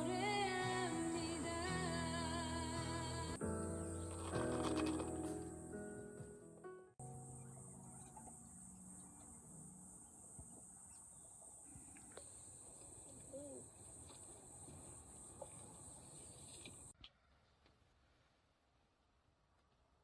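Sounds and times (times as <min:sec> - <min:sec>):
insects chirring: 0:00.0 - 0:05.9, 0:07.0 - 0:17.0.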